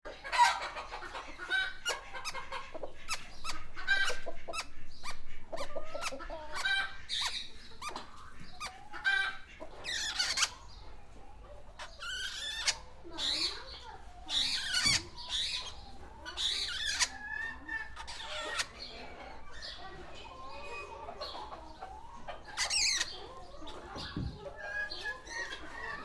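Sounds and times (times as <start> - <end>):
turkeys calling: 0.1 - 26.0
parakeets chirping: 1.8 - 10.8, 11.8 - 19.9, 22.4 - 24.3.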